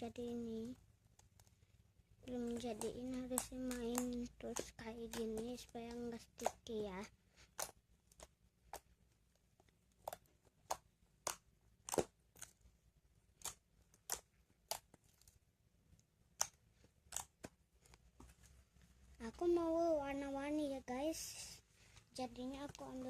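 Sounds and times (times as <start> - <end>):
slime kneaded wet clicks and pops: 7.5 - 9.0, 9.9 - 12.6, 13.3 - 15.4, 16.3 - 17.6.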